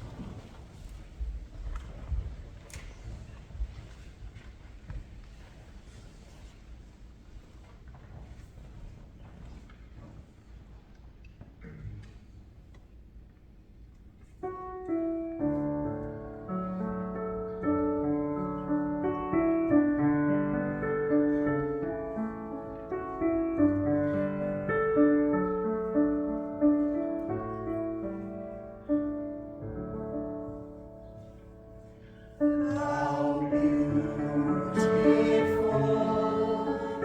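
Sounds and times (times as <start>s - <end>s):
piano playing slow chords: 14.4s - 37.0s.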